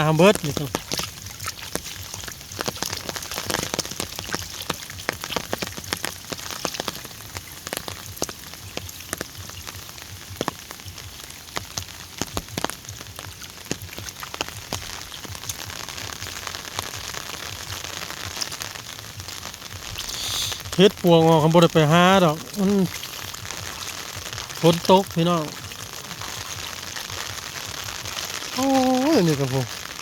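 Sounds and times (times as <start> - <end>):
heavy rain hissing: 0.0 - 1.3, 14.5 - 30.0
large raindrops tapping: 0.0 - 30.0.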